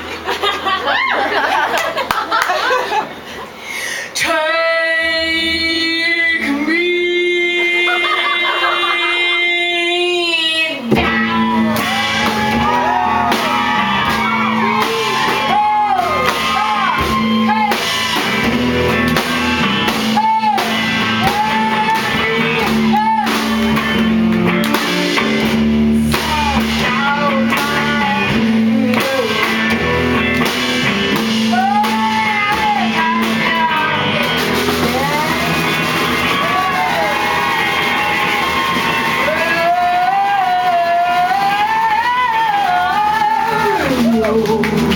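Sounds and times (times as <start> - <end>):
live band with voices singing: 2.8 - 44.9.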